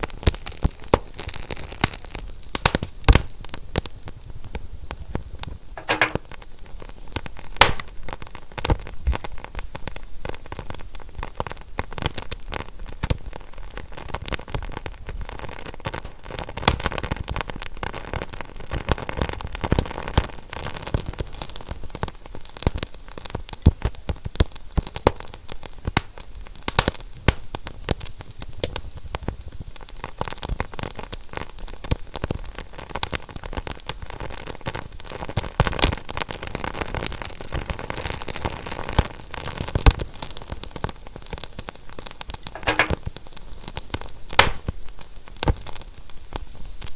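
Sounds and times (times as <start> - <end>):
fire crackling: 7.6 - 8.6, 44.4 - 45.1.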